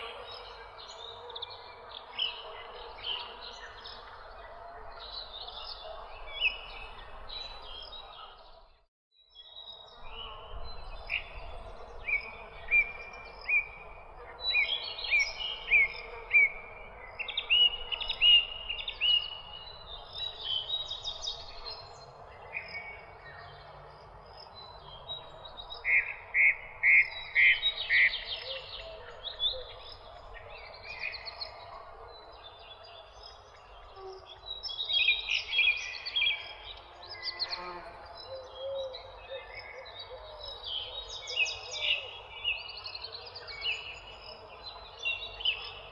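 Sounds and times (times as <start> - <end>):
songbirds chirping and singing: 9.3 - 45.9.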